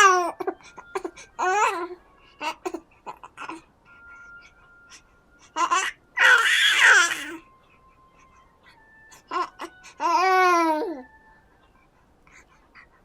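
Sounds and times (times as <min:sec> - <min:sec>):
baby babbling: 0:00.0 - 0:03.6, 0:05.6 - 0:07.4
baby squealing: 0:05.6 - 0:07.4.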